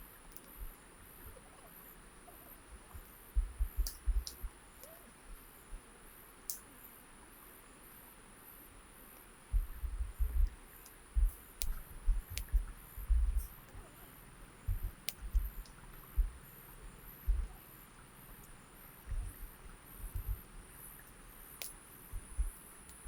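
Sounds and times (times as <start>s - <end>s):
insects droning: 0.0s - 23.0s
sharp clicks: 3.8s - 4.9s, 10.4s - 12.7s, 14.7s - 16.3s, 18.3s - 23.0s
low thumps: 9.5s - 10.5s, 11.2s - 13.9s, 14.7s - 15.6s, 16.2s - 16.4s, 17.2s - 17.6s, 19.1s - 20.5s.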